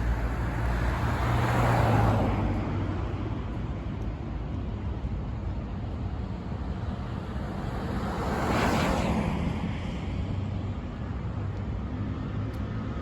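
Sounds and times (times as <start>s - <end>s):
tyre and road noise: 0.0s - 5.2s.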